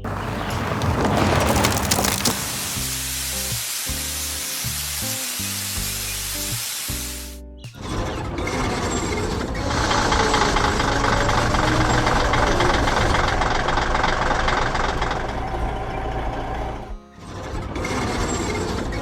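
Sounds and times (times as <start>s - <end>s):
construction vehicle engine rattling: 0.0s - 3.6s, 7.8s - 19.0s.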